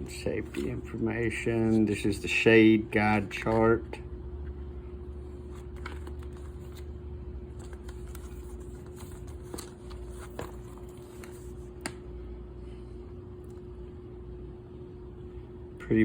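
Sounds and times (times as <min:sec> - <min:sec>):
paper rustling: 0:00.0 - 0:02.1, 0:05.3 - 0:06.9, 0:07.5 - 0:11.9
steady background hum: 0:00.0 - 0:16.0.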